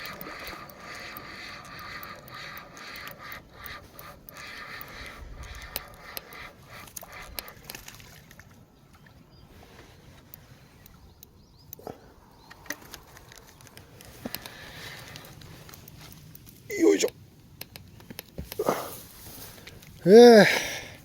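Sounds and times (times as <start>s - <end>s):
fishing reel whirring: 0.0s - 7.9s
sharp ticks: 0.0s - 8.0s.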